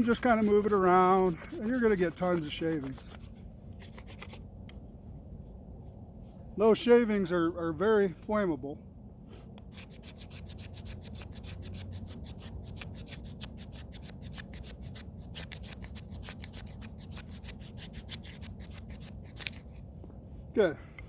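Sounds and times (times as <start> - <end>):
knife scraping wood stick: 0.0 - 4.4, 9.6 - 19.9.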